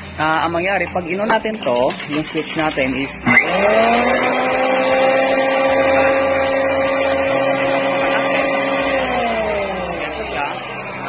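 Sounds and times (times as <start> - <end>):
jointer planer motor whining: 3.2 - 10.4.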